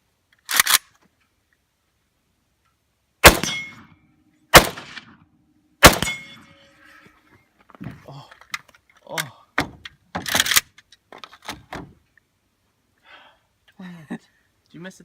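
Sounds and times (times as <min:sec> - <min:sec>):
rifle shots: 0:03.2 - 0:03.9, 0:04.5 - 0:05.2, 0:05.8 - 0:06.5.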